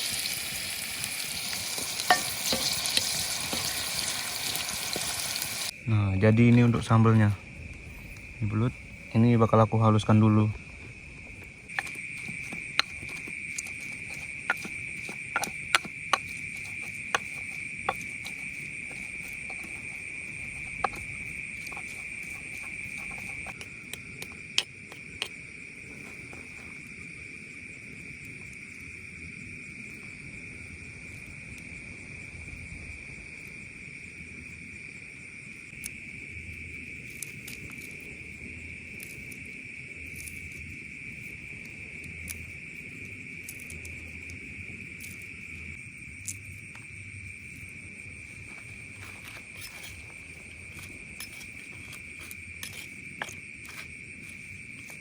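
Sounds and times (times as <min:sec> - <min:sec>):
crickets chirring: 0:00.0 - 0:55.0
pestle knocking in mortar: 0:11.7 - 0:23.6.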